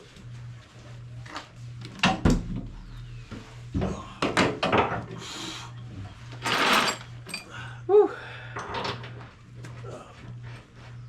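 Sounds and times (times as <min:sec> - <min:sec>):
metal tools clanking: 0:06.4 - 0:07.5.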